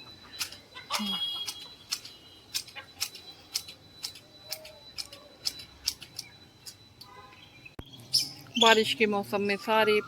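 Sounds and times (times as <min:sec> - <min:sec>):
hedge shears snipping: 0:00.4 - 0:06.8.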